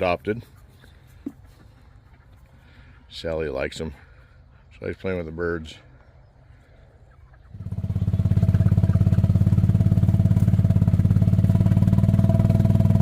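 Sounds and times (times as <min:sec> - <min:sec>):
small gasoline engine starting and running: 0:07.6 - 0:13.0.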